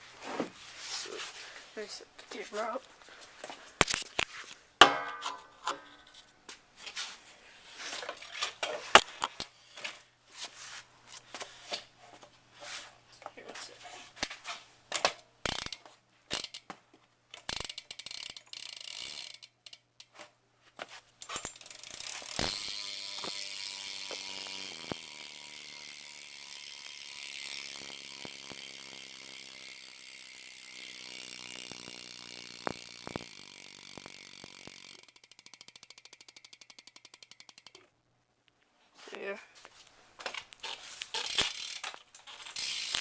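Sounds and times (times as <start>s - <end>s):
bike hub ratcheting clicks: 14.9s - 16.7s, 17.3s - 20.2s, 21.2s - 37.9s, 40.6s - 43.0s.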